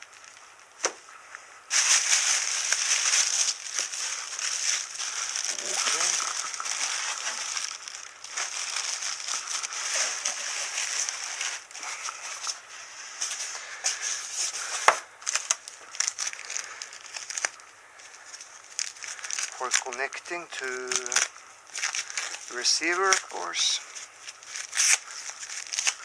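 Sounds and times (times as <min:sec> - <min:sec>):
packaging crinkling and rustling: 0:00.0 - 0:26.0.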